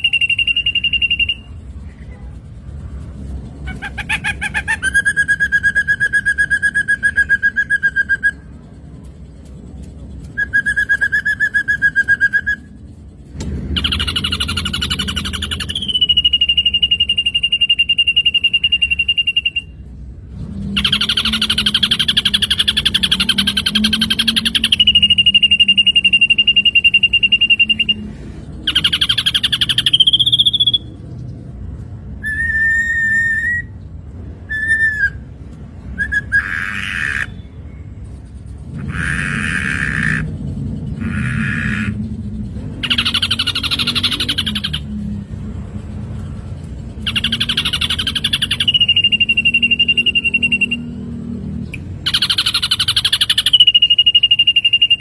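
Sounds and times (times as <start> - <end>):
bird singing whistled phrases: 0.0 - 1.6, 4.6 - 8.5, 10.3 - 12.8, 13.8 - 19.8, 20.7 - 28.0, 32.1 - 33.8, 34.4 - 35.3, 35.9 - 37.5, 47.0 - 51.1, 52.1 - 55.0.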